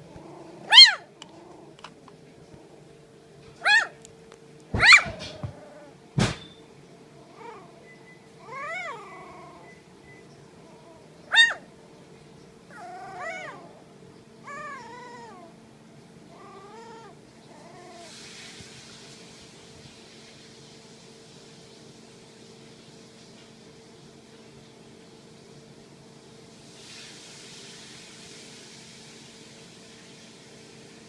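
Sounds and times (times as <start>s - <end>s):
puppies whining and yelping: 0.4s - 1.5s, 3.6s - 4.0s, 4.8s - 6.0s, 7.2s - 11.7s, 12.7s - 15.6s, 16.2s - 18.2s.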